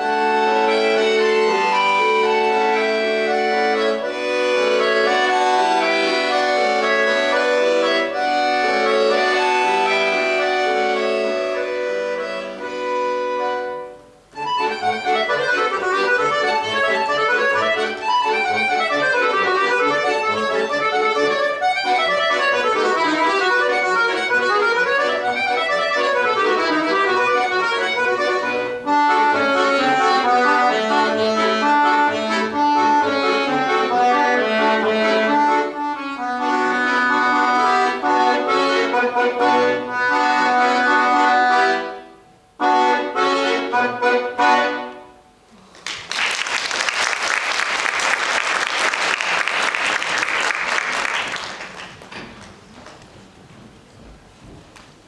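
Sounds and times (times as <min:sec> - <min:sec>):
solo accordion playing: 0:00.0 - 0:45.6
audience applause: 0:45.7 - 0:53.0.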